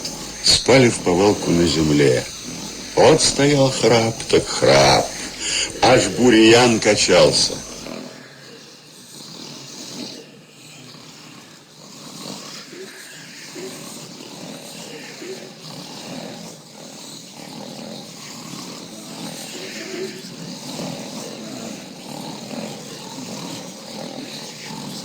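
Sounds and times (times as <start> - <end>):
men snoring: 0.0 - 7.9.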